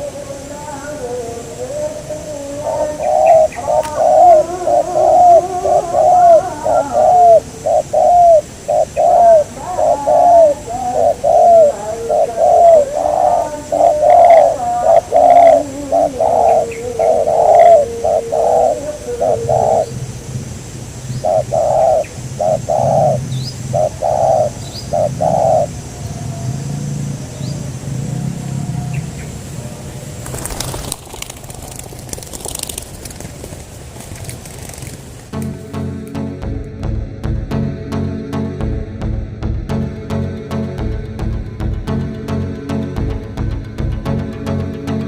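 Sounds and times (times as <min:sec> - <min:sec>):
dove cooing: 0:00.0 - 0:20.5, 0:21.1 - 0:35.2
low hum: 0:00.0 - 0:45.0.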